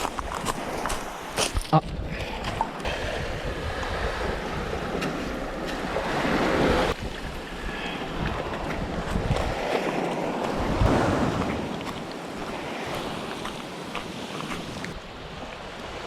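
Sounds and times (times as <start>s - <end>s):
sea waves washing: 0.0s - 16.0s
wind rumble on microphone: 0.0s - 16.0s.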